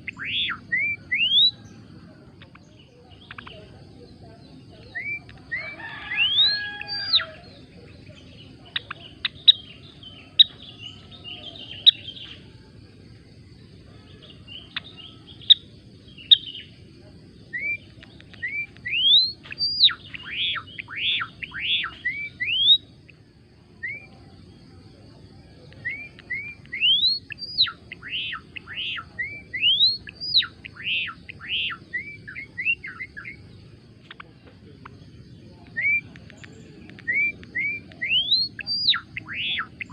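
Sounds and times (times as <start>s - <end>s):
songbird whistling: 0.0s - 1.9s, 4.8s - 12.4s, 14.0s - 16.7s, 17.4s - 23.2s, 23.8s - 24.2s, 25.6s - 33.5s, 35.3s - 39.9s.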